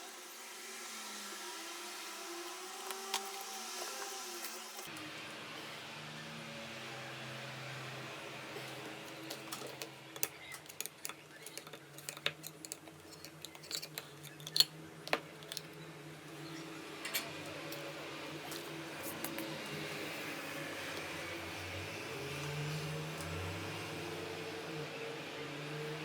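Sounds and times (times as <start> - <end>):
small hard parts clicking: 9.1 - 15.8.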